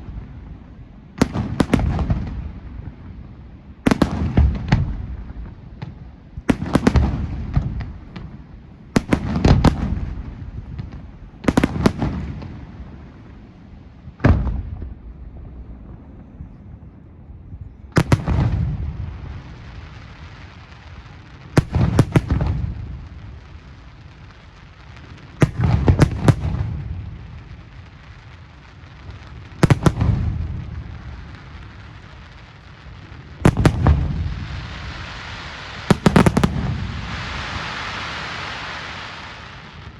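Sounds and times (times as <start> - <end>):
fireworks bangs: 0.0 - 3.2, 3.8 - 16.2, 17.9 - 39.9.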